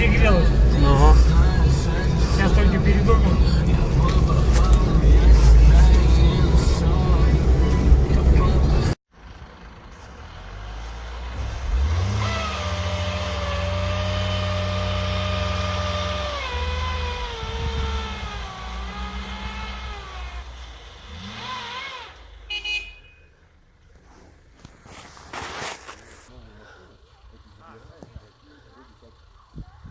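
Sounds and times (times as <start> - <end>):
engine running hard with whine: 0.0 - 22.5.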